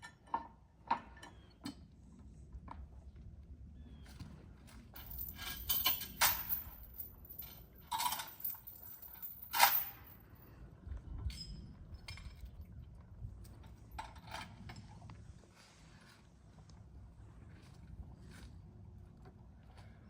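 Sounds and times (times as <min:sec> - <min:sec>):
sharp metallic clinks: 0:05.0 - 0:10.2.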